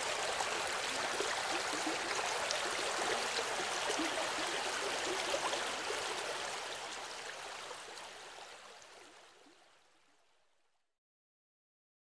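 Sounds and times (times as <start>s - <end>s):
small river flowing: 0.0s - 10.7s.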